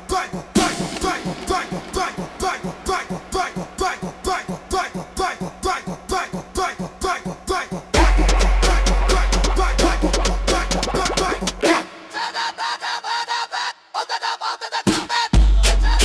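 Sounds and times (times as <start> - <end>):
electronic dance track percussion: 0.0 - 12.2, 14.8 - 16.0.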